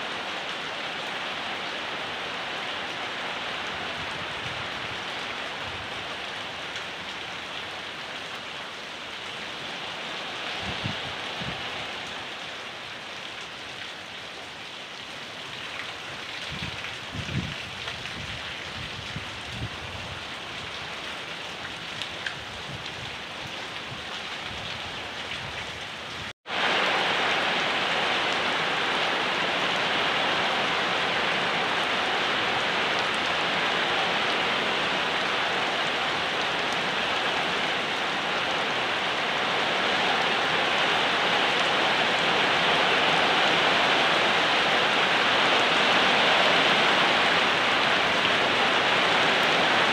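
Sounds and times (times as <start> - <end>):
steady rain falling: 0.0 - 49.9.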